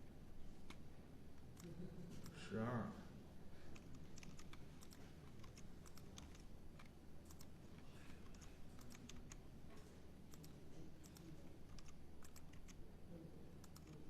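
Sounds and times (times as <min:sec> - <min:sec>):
keyboard typing and clicking: 0:03.7 - 0:09.4, 0:10.3 - 0:12.8, 0:13.6 - 0:14.0.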